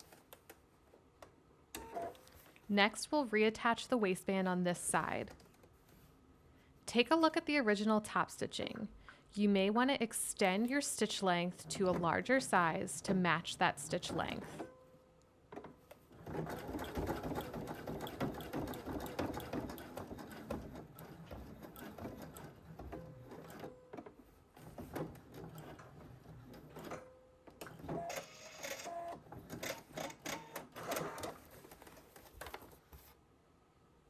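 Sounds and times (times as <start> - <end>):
sewing machine stitching: 16.1 - 23.8.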